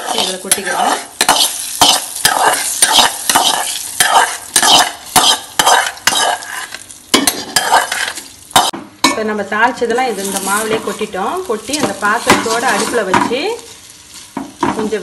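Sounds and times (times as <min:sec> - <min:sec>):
metal spoon scraping a pan: 0:00.0 - 0:08.8, 0:10.1 - 0:13.2.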